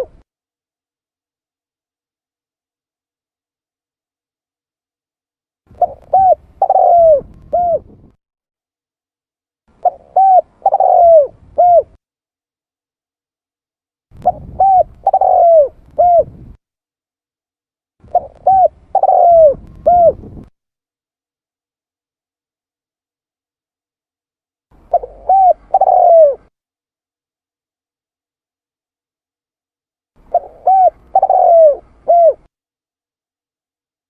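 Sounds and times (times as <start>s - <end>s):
dove cooing: 0.0s - 0.2s, 5.7s - 8.1s, 9.8s - 12.0s, 14.2s - 16.6s, 18.1s - 20.5s, 24.8s - 26.5s, 30.2s - 32.5s.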